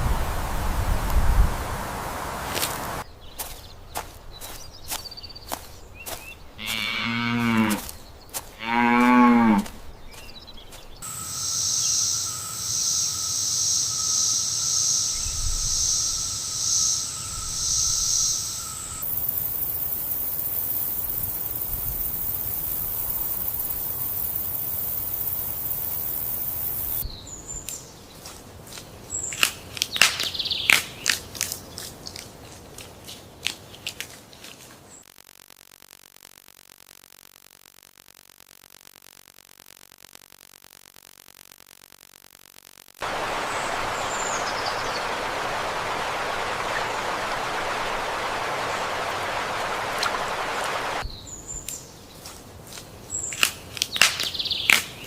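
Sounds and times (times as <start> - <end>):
cow mooing: 6.6 - 7.8, 8.6 - 9.7
high buzzing and hiss: 11.0 - 27.0, 35.0 - 51.0
scattered clicks: 35.0 - 43.0.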